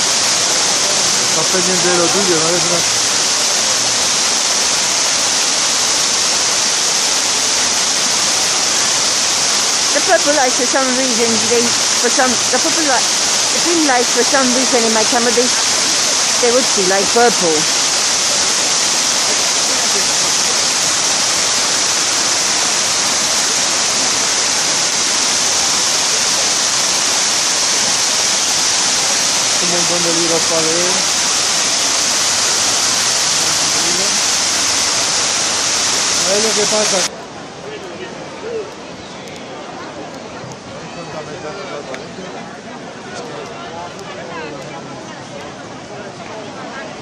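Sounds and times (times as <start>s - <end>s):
loud rushing hiss: 0.0s - 37.1s.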